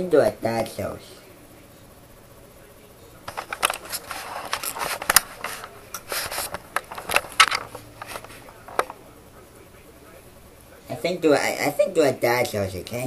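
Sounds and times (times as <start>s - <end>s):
paper rustling and scraping: 3.3s - 8.9s.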